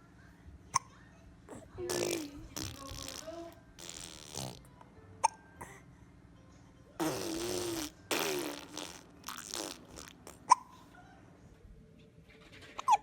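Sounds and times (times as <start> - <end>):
baby hiccuping: 1.5 - 4.6, 7.0 - 10.8.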